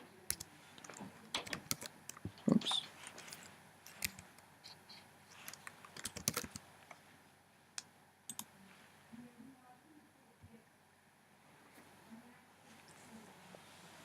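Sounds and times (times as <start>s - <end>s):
computer key taps: 5.5s - 6.6s.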